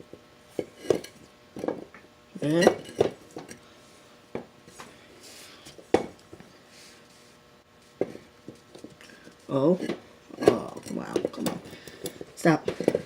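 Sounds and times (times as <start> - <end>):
metal tools knocking and clinking: 10.4 - 12.2.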